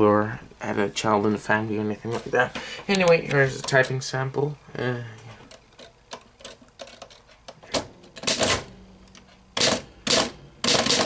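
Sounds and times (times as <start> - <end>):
manual typewriter key strikes: 5.8 - 8.7, 9.6 - 11.0.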